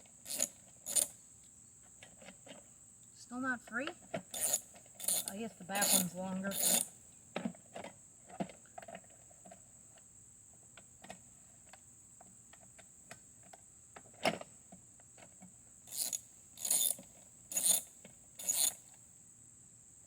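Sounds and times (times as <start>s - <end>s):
hand tools clicking on metal and plastic: 0.3s - 1.1s, 3.8s - 6.9s, 15.9s - 18.8s.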